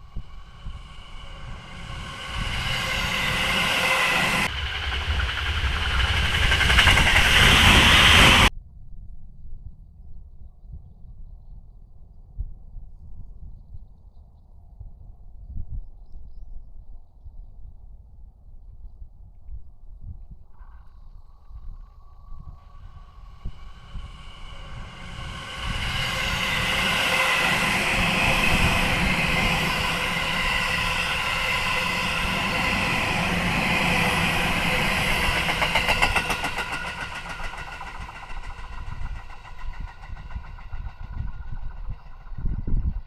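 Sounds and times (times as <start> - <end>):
electric train passing: 0.0 - 8.5, 22.6 - 43.0
wheel clatter over rail joints: 1.5 - 8.5, 23.6 - 42.5.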